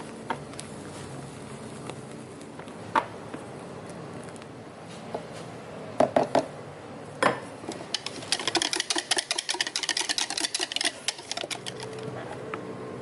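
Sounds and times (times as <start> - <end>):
utensils knocking: 7.7 - 12.0.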